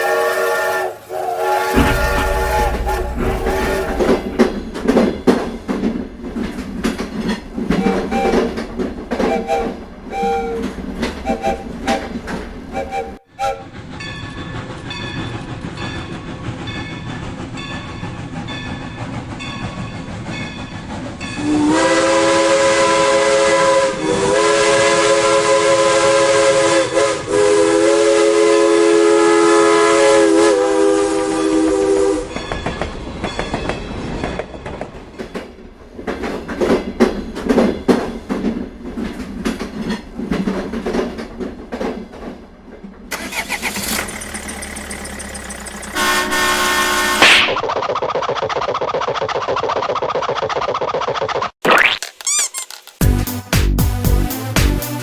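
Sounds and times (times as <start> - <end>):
loud train horn: 0.0 - 4.3, 7.7 - 13.8, 21.4 - 32.3, 45.9 - 47.5
train wheels clattering: 0.9 - 22.4, 32.1 - 43.2.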